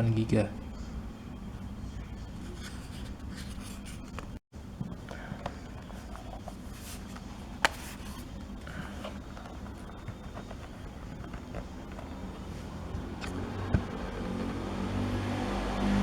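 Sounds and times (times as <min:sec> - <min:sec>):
steady background hum: 0:00.0 - 0:15.3
laptop being handled: 0:05.1 - 0:14.0.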